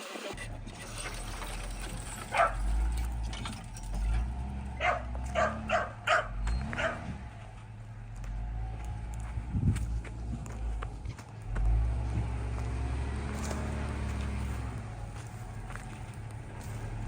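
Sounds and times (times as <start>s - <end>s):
dog barking: 2.3s - 2.7s, 4.8s - 7.2s
steady low rumble: 5.9s - 12.8s.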